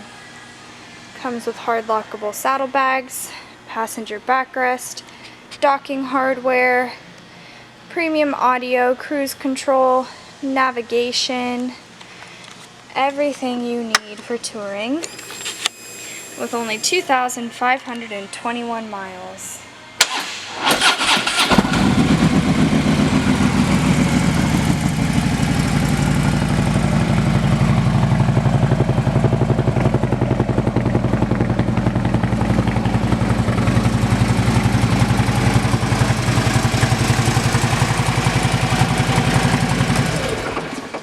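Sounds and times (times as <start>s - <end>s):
motorcycle engine idling: 21.5s - 40.5s.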